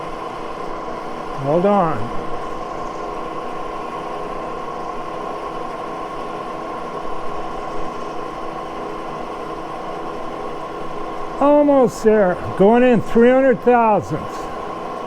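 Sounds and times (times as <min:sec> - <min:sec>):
machine spindle hum: 0:00.0 - 0:15.0.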